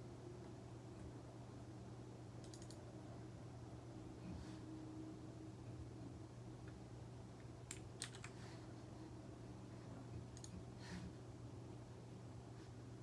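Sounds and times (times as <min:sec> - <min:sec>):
low electrical hum: 0:00.0 - 0:13.0
computer keys clicking: 0:02.4 - 0:02.8, 0:07.6 - 0:08.4, 0:10.3 - 0:10.6.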